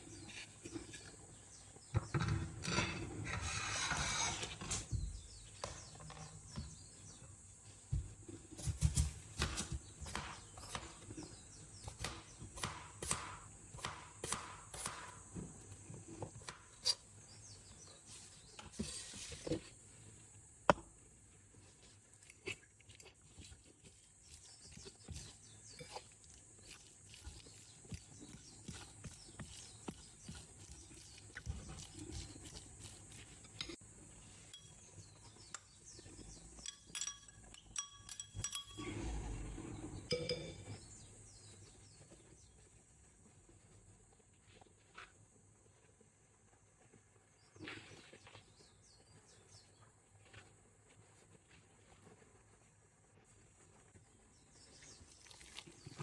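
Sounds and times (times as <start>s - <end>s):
utensils and cookware clattering: 2.0s - 4.9s, 34.4s - 40.8s.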